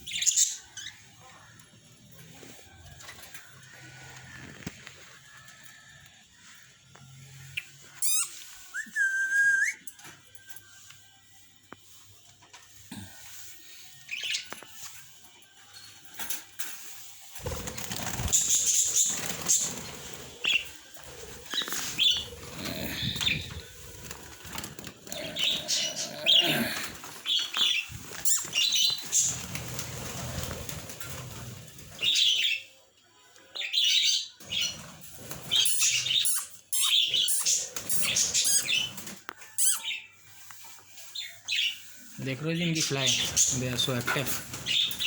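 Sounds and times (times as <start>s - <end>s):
wings flapping: 17.4s - 32.2s, 43.1s - 45.0s.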